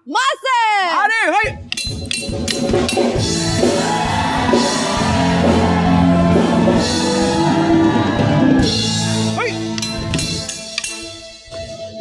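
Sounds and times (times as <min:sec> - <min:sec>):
loud rock music with drums: 0:01.6 - 0:10.8.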